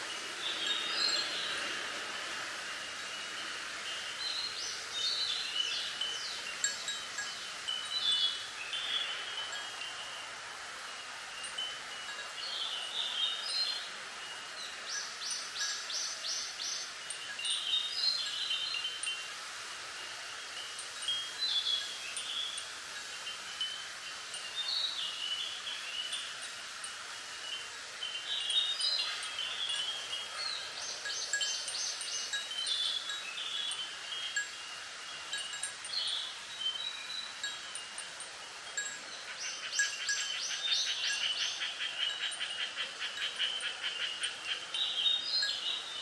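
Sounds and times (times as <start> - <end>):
wind chimes tinkling: 0.0 - 46.0
wind through bamboo leaves: 0.0 - 46.0.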